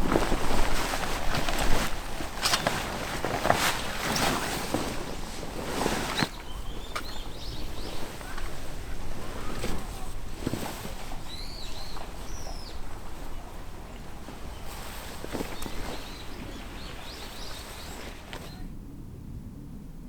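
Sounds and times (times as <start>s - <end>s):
rustling and knocking handling noises: 0.0s - 18.6s.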